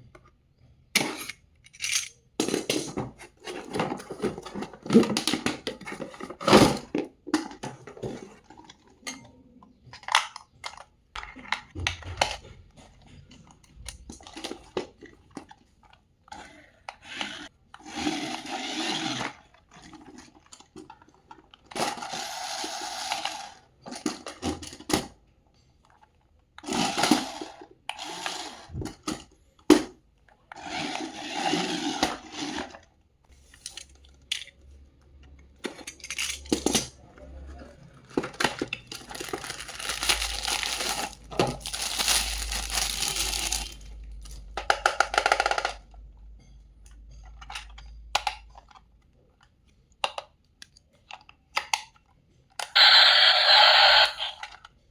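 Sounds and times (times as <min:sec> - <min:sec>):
cardboard or plastic scraping: 0:37.9 - 0:44.4
packaging clicks and knocks: 0:38.0 - 0:45.9.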